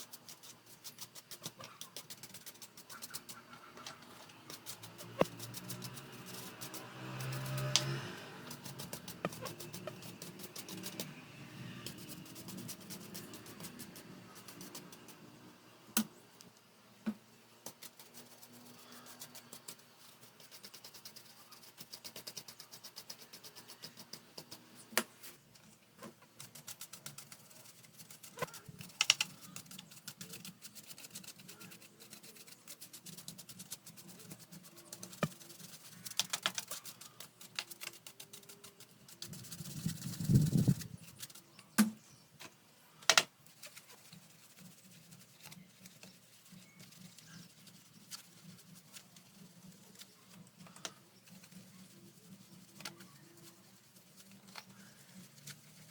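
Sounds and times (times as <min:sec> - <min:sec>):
rustling scrape: 0:00.0 - 0:15.2, 0:24.6 - 0:42.6
plastic parts clicking: 0:43.0 - 0:43.3.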